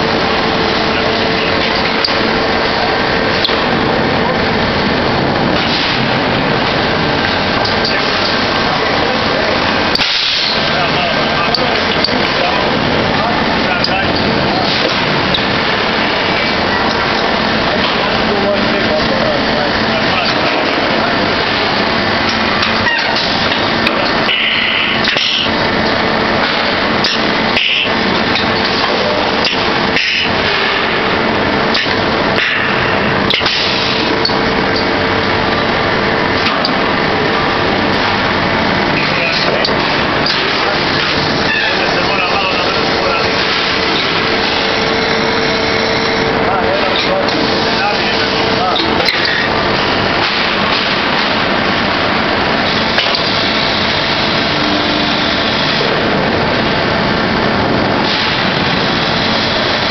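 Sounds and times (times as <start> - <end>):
welding machine hum: 0.0 - 59.9
welding crackling hiss: 9.3 - 10.7, 24.3 - 28.4.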